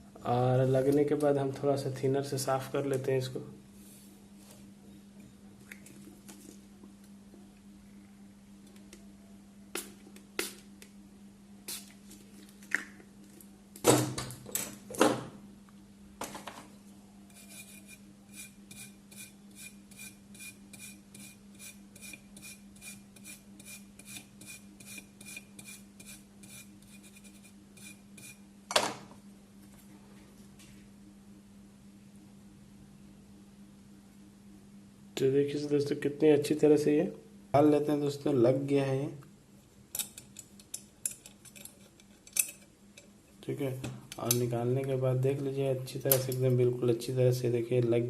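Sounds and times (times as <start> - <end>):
steady low hum: 0.0 - 48.0
brush scrubbing circuit board: 17.3 - 28.4.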